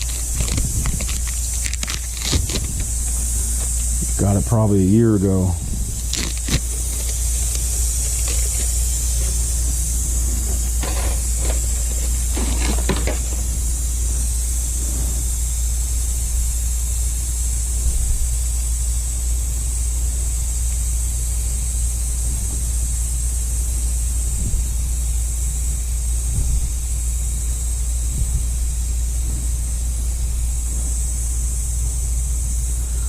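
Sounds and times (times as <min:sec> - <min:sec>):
rustling handling noise: 0:00.0 - 0:04.2, 0:05.9 - 0:13.8
high hiss: 0:00.0 - 0:33.0
low hum: 0:00.0 - 0:33.0.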